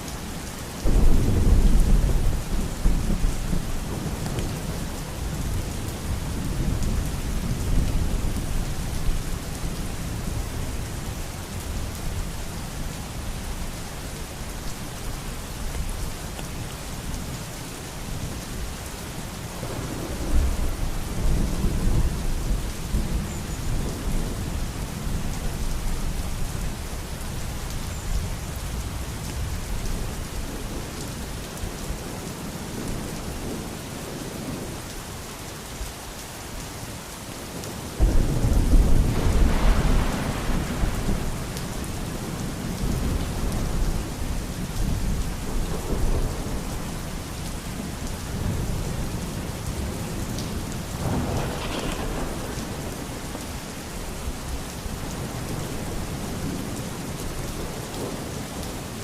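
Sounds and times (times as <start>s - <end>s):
steady rain: 0.0s - 59.0s
thunder rumble: 0.8s - 8.4s, 38.0s - 46.7s, 49.8s - 56.6s.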